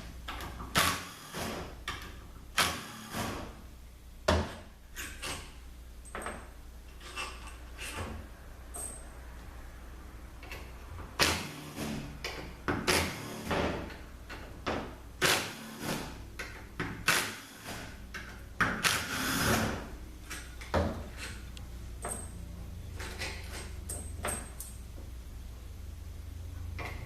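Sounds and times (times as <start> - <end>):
steady low hum: 0.0 - 27.0
hand tools and bolts clinking: 8.7 - 9.2.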